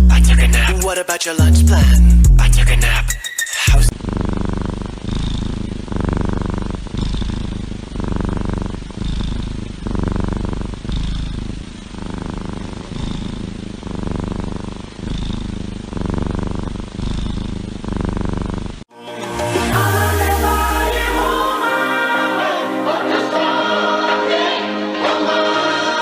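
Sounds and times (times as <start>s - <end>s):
cat purring: 0.0s - 1.0s, 3.9s - 18.9s, 19.5s - 24.6s.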